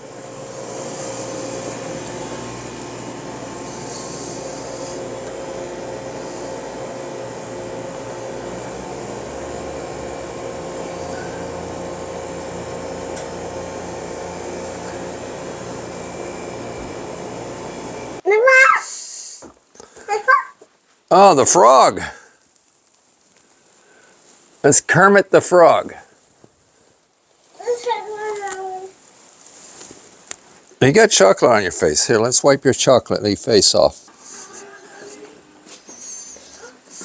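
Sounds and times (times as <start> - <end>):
motor-driven fan whirring: 0.0 - 18.2.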